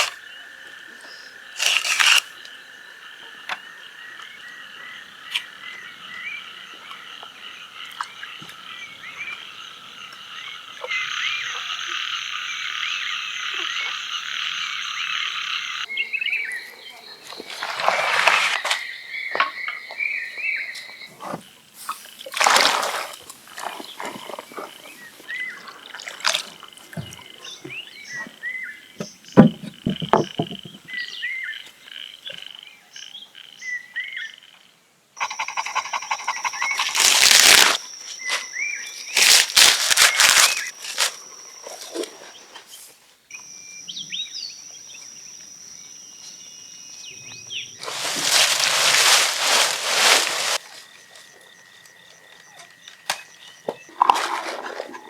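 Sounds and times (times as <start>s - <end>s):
high insect drone: 0.0s - 16.0s, 35.2s - 42.4s, 43.3s - 53.9s
frogs croaking: 0.0s - 55.0s.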